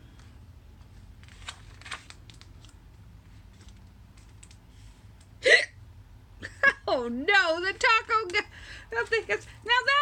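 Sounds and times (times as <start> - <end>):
book pages turning: 0.8 - 4.7.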